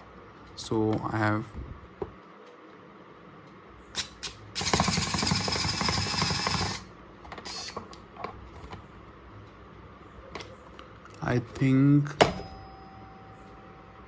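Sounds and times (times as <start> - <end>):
electric screwdriver motor running: 4.0 - 6.9, 7.5 - 7.8.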